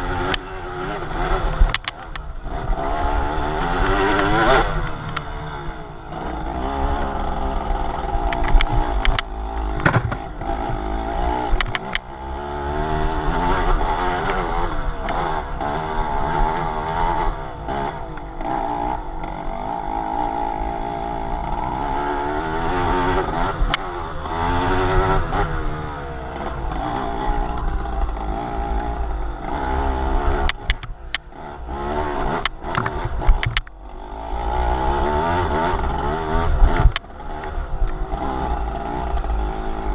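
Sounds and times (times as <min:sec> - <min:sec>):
motor vehicle engine revving: 0:00.0 - 0:39.9
knocks and clatter: 0:08.3 - 0:10.9, 0:32.3 - 0:33.7.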